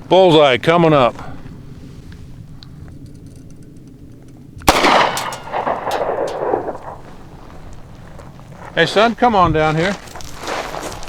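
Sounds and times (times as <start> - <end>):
pistol shot with echo: 4.7 - 7.4.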